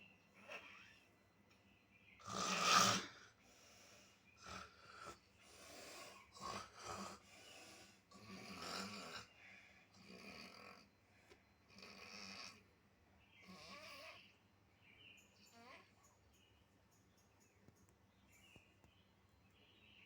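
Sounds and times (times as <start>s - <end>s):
person snoring: 2.3s - 3.2s.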